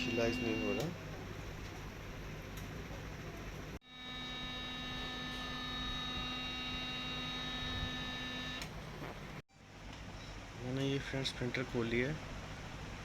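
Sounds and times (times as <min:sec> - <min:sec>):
printer motor humming and whining: 0:00.0 - 0:01.0, 0:03.8 - 0:08.7.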